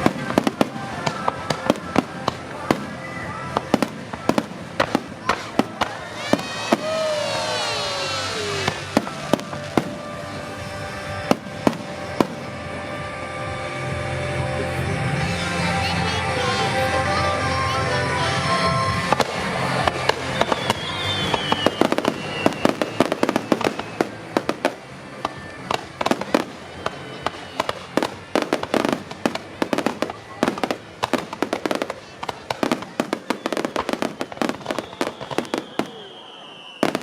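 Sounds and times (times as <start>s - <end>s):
fireworks bangs and crackling: 0.0s - 15.8s, 16.6s - 37.0s
music: 0.0s - 37.0s
falling firework whistle: 5.4s - 10.4s, 20.0s - 24.5s, 33.1s - 37.0s.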